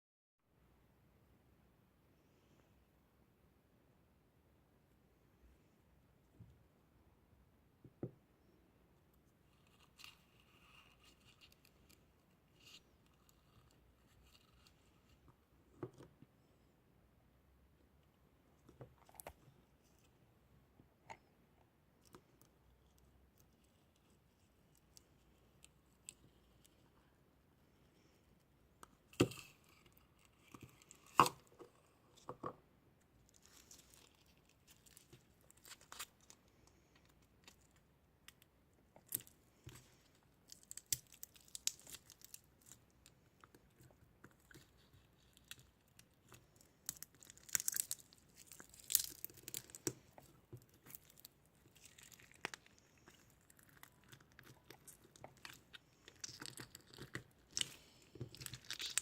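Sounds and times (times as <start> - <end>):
crinkling and tearing: 33.2 - 59.0.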